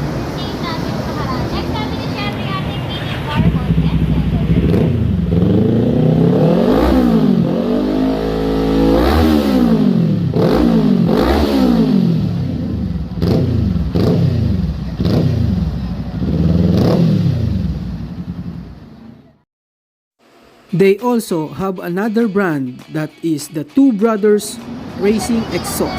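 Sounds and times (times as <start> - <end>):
motorcycle engine revving: 3.3 - 19.2.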